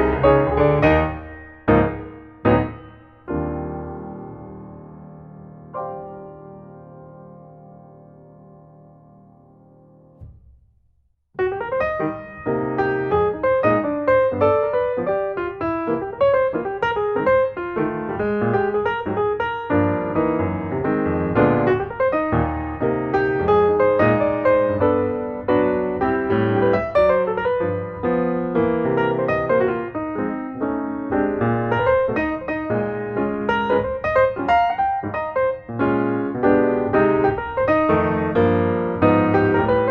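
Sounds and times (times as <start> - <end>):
piano music: 0.0 - 10.4, 11.4 - 39.9.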